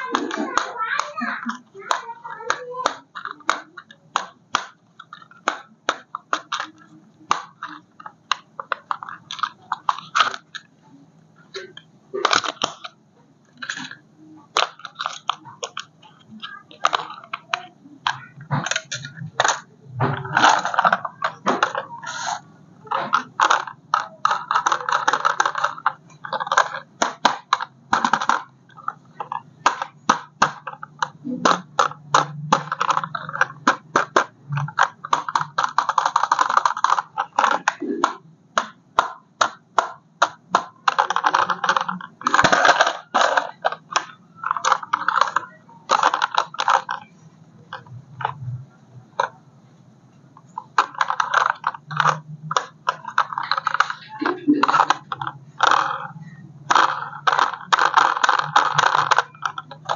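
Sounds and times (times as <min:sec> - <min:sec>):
hard plastic parts clicking: 0:00.0 - 0:10.8, 0:11.4 - 0:49.4, 0:50.3 - 0:59.9
plastic packaging crinkling: 0:40.4 - 0:48.4, 0:50.5 - 0:59.9.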